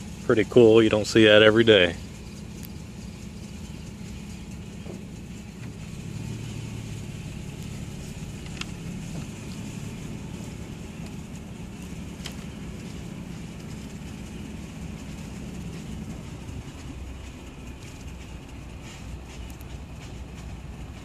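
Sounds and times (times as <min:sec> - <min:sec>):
faint outdoor background noise: 0:00.0 - 0:21.0
low engine hum: 0:00.0 - 0:21.0
faint ticks: 0:02.3 - 0:04.6.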